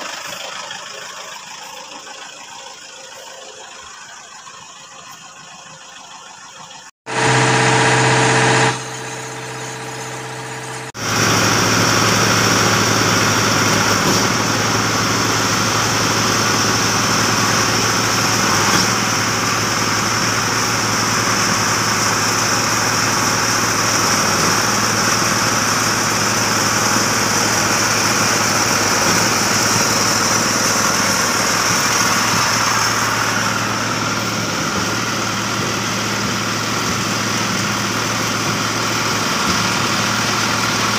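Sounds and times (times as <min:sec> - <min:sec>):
concrete pump engine humming: 0:00.0 - 0:40.9.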